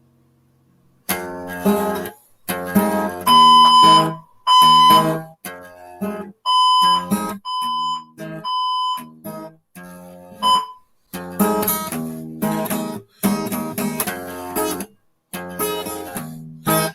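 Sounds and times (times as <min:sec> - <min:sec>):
acoustic guitar strumming: 0:01.0 - 0:16.9
fire alarm beeping: 0:03.3 - 0:05.2, 0:06.5 - 0:09.2, 0:10.4 - 0:10.8.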